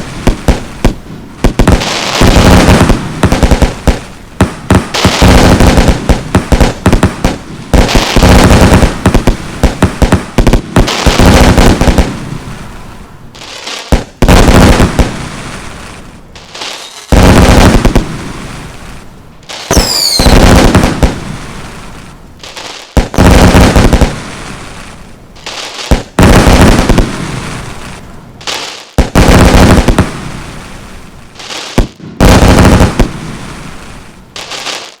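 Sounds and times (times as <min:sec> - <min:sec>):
fireworks bangs: 0:00.0 - 0:35.0
fireworks crackling: 0:00.0 - 0:35.0
falling whistle: 0:19.7 - 0:20.3.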